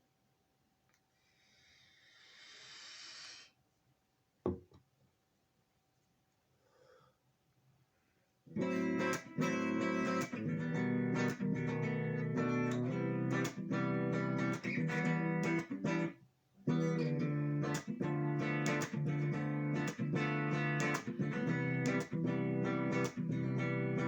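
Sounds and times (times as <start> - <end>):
guitar strumming chords: 8.5 - 16.1, 16.7 - 24.0.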